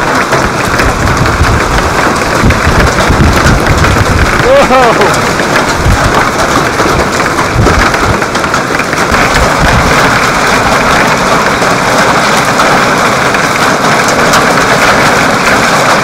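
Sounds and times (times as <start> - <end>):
wind buffeting microphone: 0.0 - 11.9
wind driving heavy rain: 0.0 - 16.0.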